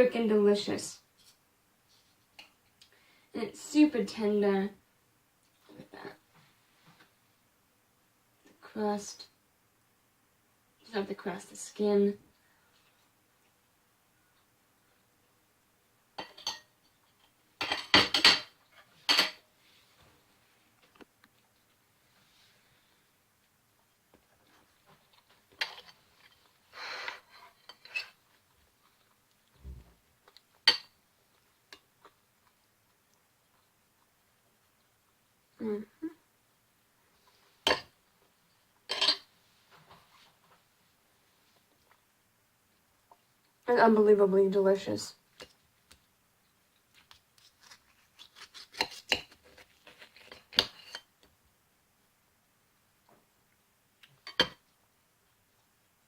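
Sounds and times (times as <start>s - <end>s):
cutlery clinking on a plate: 17.6s - 18.5s, 19.1s - 19.4s, 38.9s - 39.3s, 54.2s - 54.6s
cutlery scraping a plate: 27.4s - 28.2s, 38.9s - 39.3s, 48.4s - 51.1s
eating clicks and scrapes: 45.3s - 51.1s.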